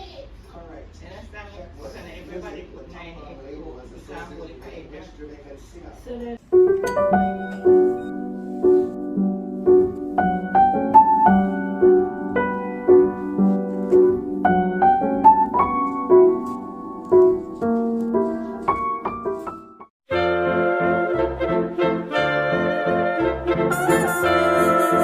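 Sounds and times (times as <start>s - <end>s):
gentle solo piano tune: 6.4s - 19.9s
brass-led music: 20.1s - 25.0s.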